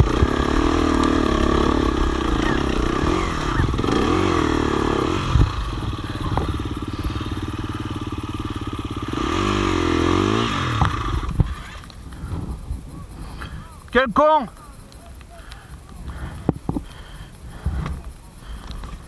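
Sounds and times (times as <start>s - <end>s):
motorcycle engine revving: 0.0s - 13.8s.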